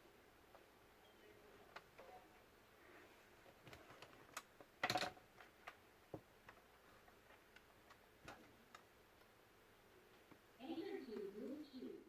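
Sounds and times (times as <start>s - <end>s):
laptop clicks and taps: 3.7s - 6.6s.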